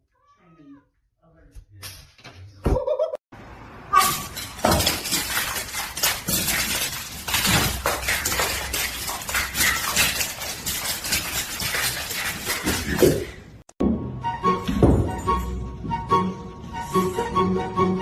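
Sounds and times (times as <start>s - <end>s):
hard objects clattering: 4.0s - 13.7s.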